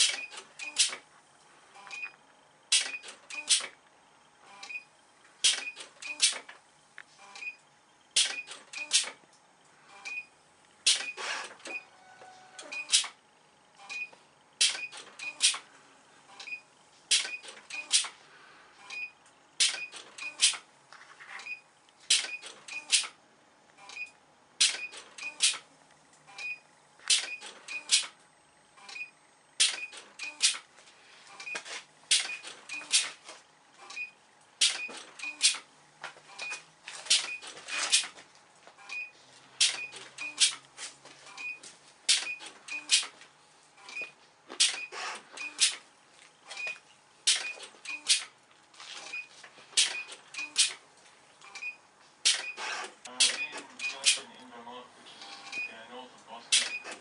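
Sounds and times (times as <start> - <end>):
sharp mechanical clicks: 0.0 - 1.0, 1.8 - 3.9, 5.4 - 6.6, 7.4 - 9.2, 10.8 - 11.8, 12.6 - 15.7, 16.4 - 18.2, 18.9 - 20.7, 22.1 - 28.2, 28.8 - 30.7, 31.4 - 35.7, 36.3 - 38.2, 39.6 - 40.7, 41.3 - 43.2, 43.8 - 45.9, 46.5 - 48.4, 49.7 - 50.8, 51.4 - 54.3, 56.5 - 57.0.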